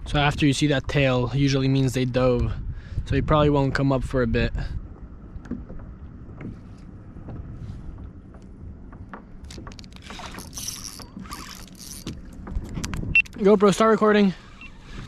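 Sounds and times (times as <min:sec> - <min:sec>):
water sloshing against hull: 0:00.0 - 0:15.0
wind rumble on microphone: 0:00.0 - 0:15.0.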